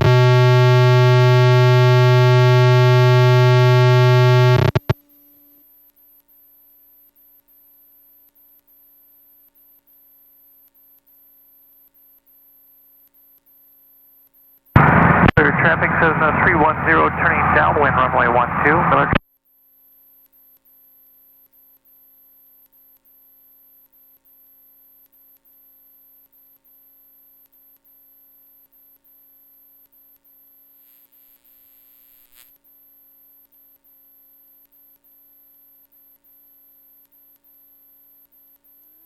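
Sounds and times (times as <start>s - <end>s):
electrical hum: 0.0s - 4.9s, 14.8s - 19.2s
faint high whine: 0.0s - 19.2s.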